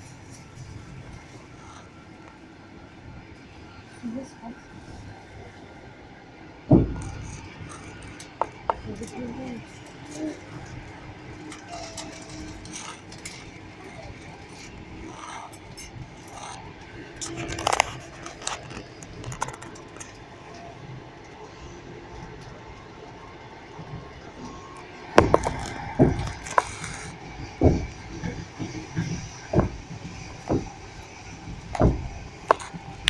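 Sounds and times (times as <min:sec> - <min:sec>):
train carriage rumble: 0:00.0 - 0:33.0
wheels clacking on rail joints: 0:06.7 - 0:33.0.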